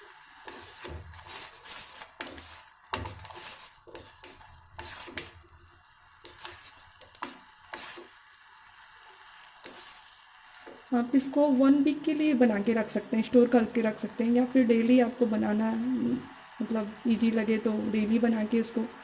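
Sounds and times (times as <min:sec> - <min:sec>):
spoon scraping a cooking pot: 0:00.4 - 0:05.5, 0:06.2 - 0:08.2, 0:09.4 - 0:10.9.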